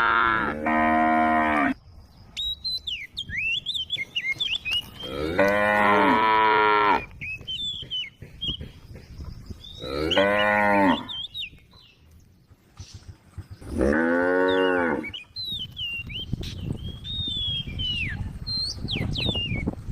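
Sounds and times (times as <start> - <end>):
cow mooing: 0.0 - 1.8, 5.0 - 7.1, 9.8 - 11.2, 13.7 - 15.2.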